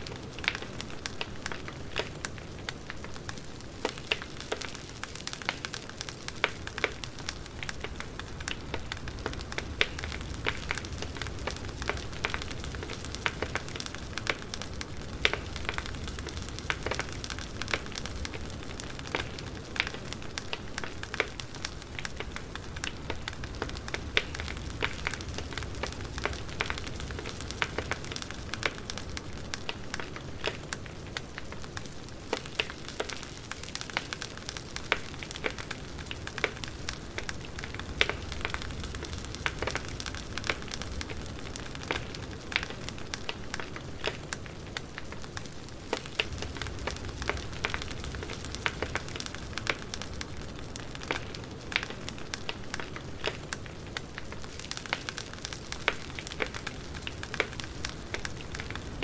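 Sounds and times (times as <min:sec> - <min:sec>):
low rumble of flames: 0:00.0 - 0:59.0
wood crackling and popping: 0:00.0 - 0:59.0.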